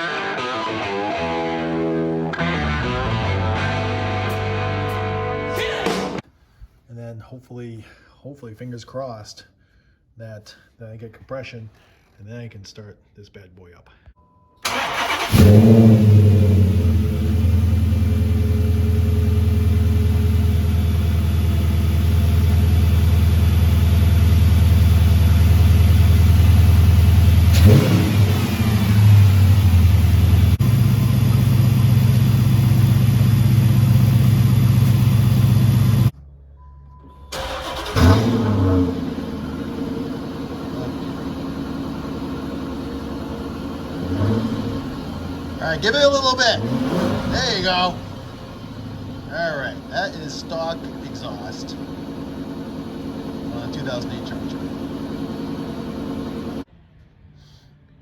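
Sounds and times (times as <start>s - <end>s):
car engine idling: 1.4s - 6.0s, 14.6s - 36.7s, 37.3s - 56.7s
engine throttle blip: 14.2s - 40.0s.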